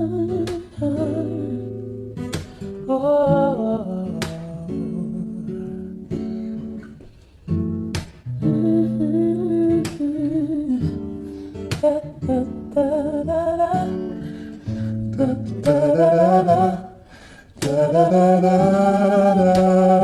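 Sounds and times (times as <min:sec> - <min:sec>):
acoustic guitar song: 0:00.0 - 0:20.0
person humming a melody: 0:15.2 - 0:17.0, 0:17.6 - 0:20.0.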